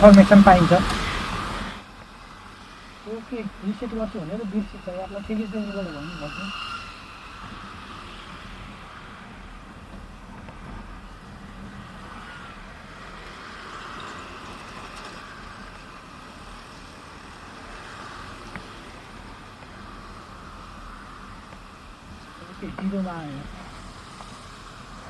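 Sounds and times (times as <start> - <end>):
wind noise on microphone: 0.0 - 2.0
road noise: 0.0 - 25.0.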